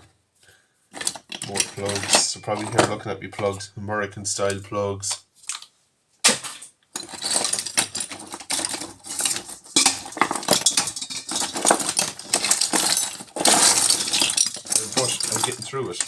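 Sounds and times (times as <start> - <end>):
scrap metal clinking and rattling: 0.9 - 3.0, 6.5 - 16.0.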